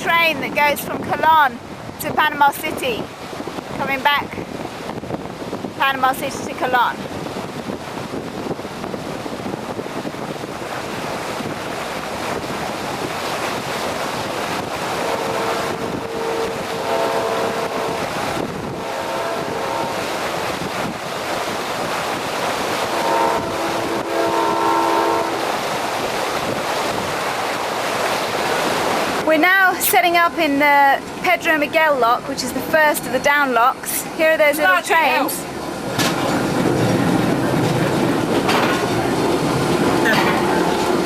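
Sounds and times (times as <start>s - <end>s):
wind on microphone: 0.0s - 29.7s, 30.7s - 41.0s
train horn chord: 15.0s - 20.2s, 22.8s - 25.5s.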